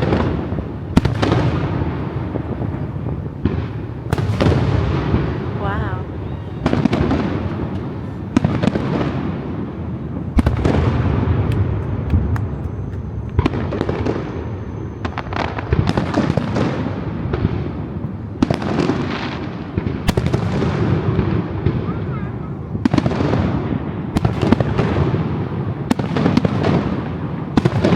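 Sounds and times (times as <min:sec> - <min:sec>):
low booming: 0:00.0 - 0:22.1
fireworks bangs: 0:00.0 - 0:27.9
fireworks crackle: 0:00.0 - 0:27.9.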